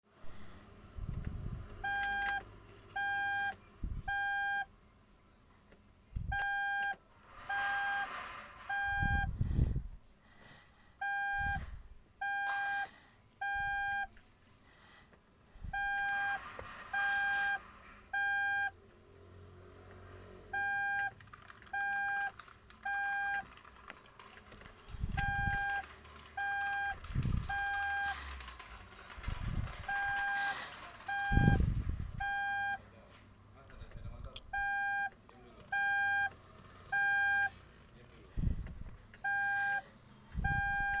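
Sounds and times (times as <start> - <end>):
electronic alarm beeping: 1.8 - 2.4, 3.0 - 4.7, 6.3 - 9.3, 11.0 - 14.1, 15.7 - 18.8, 20.6 - 21.1, 21.8 - 22.3, 22.9 - 23.4, 25.2 - 28.2, 29.8 - 31.6, 32.2 - 32.8, 34.5 - 37.5, 39.2 - 39.8, 40.4 - 41.0
low thumps and rumbles: 31.4 - 32.2.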